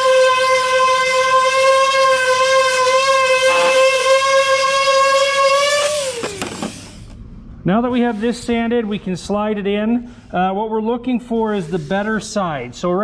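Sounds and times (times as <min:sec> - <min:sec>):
electric sander whining: 0:00.0 - 0:07.2.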